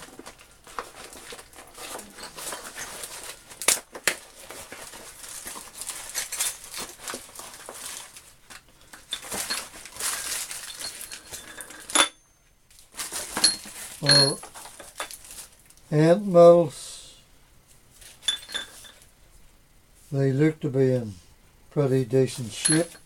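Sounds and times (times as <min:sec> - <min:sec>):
parcel wrapping crinkling: 0:00.0 - 0:12.0, 0:12.7 - 0:15.9.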